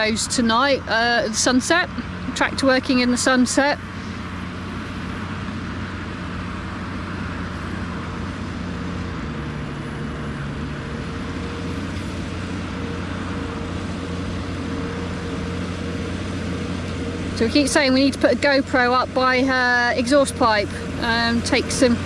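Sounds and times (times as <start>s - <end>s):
tractor diesel engine under load: 0.0s - 22.0s.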